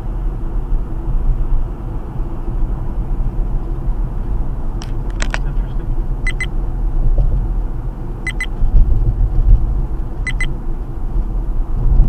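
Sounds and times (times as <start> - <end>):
car road and engine rumble: 0.0 - 12.0
double electronic beep: 6.3 - 6.5, 8.3 - 8.5, 10.3 - 10.5.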